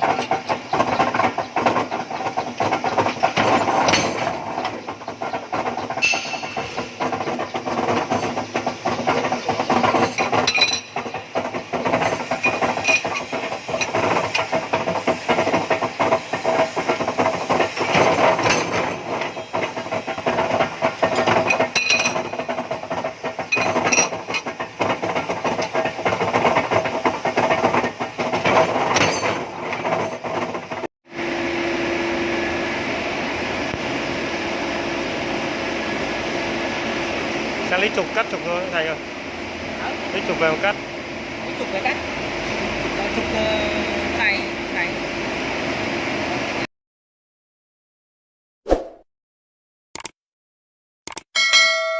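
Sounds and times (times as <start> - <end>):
metallic clanks and clicks: 0.0 - 30.8
metalworking machinery rattling: 0.0 - 30.9, 37.4 - 40.8.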